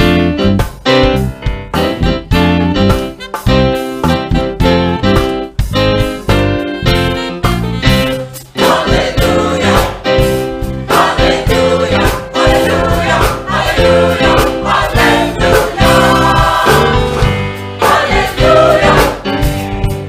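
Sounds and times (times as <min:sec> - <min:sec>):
instrumental accompaniment with beat: 0:00.0 - 0:20.0
choir singing: 0:08.6 - 0:10.1, 0:10.8 - 0:19.4.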